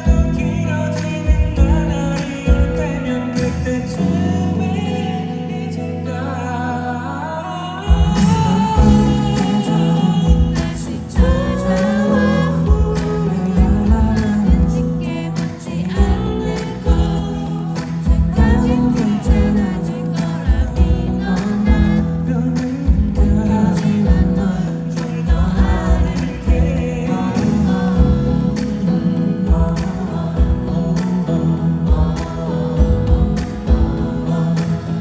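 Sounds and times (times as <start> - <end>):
steady low drum beat: 0.0 - 3.7, 7.9 - 35.0
band accompaniment: 0.0 - 4.2, 7.9 - 35.0
man singing pop song live: 0.0 - 35.0.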